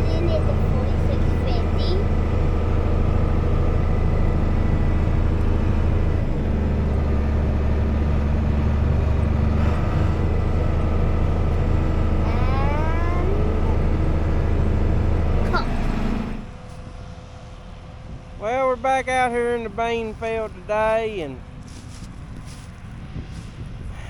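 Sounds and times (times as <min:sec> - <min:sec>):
combine harvester droning: 0:00.0 - 0:24.0
short rising whine: 0:02.2 - 0:16.8.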